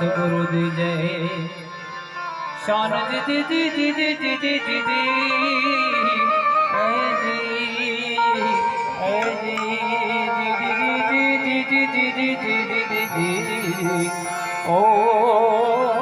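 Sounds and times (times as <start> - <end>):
harmonium melody: 0.0 - 16.0.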